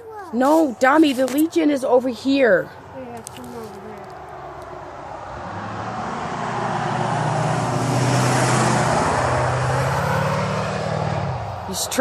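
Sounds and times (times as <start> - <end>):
truck driving past: 4.1 - 12.0.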